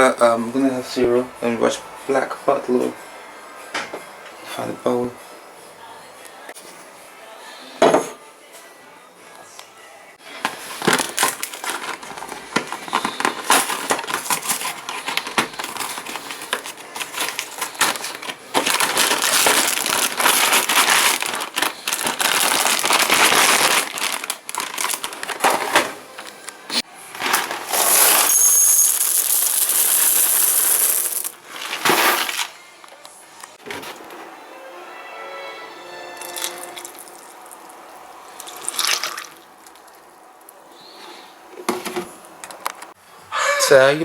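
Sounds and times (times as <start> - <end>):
cereal poured into bowl: 27.3 - 32.4.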